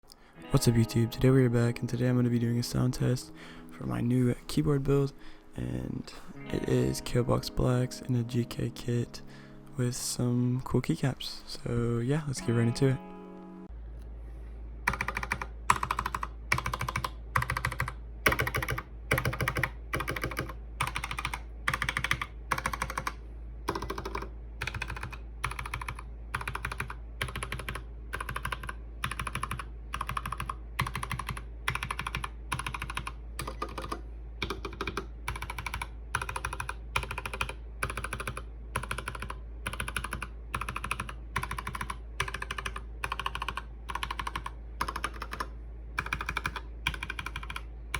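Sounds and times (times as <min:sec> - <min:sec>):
mechanical keyboard typing: 0:14.9 - 0:47.7.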